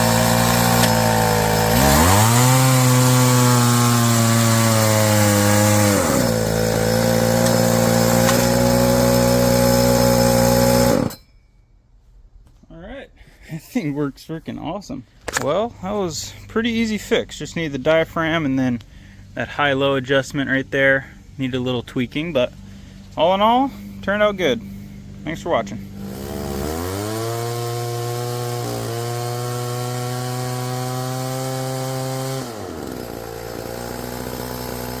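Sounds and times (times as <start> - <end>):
two-stroke winch engine running: 0.0 - 11.2, 23.7 - 35.0.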